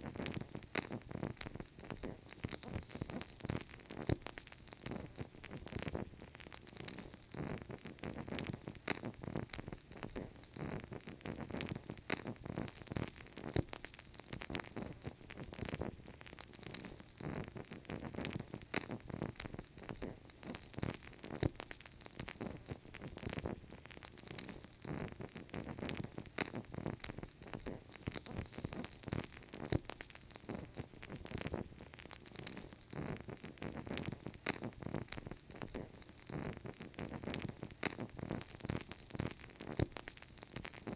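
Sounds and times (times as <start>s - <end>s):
wood fire crackling: 0.0s - 40.9s.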